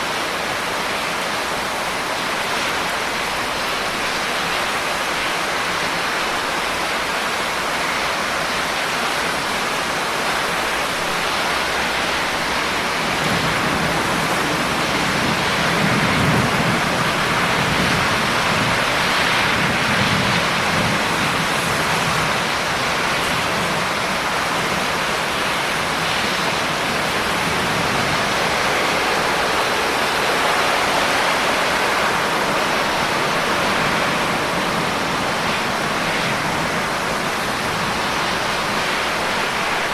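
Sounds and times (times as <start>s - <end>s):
heavy rain: 0.0s - 39.9s
rolling thunder rumble: 9.2s - 39.9s.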